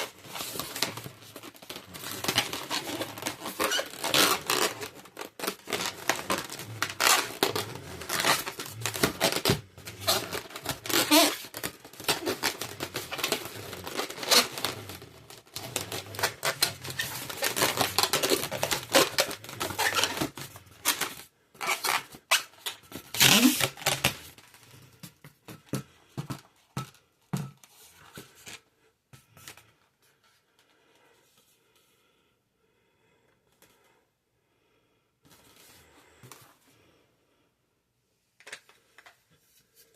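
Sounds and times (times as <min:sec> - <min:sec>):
balloons rubbing and squeaking: 0:00.0 - 0:24.9.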